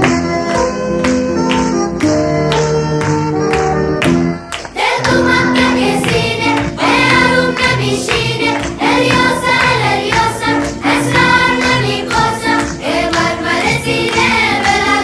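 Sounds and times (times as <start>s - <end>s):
instrumental music: 0.0s - 15.0s
song with singing voices: 4.5s - 15.0s.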